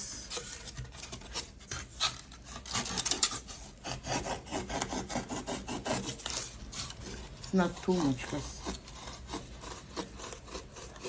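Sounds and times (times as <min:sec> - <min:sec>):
hand tool rasping on wood: 0:02.0 - 0:11.0.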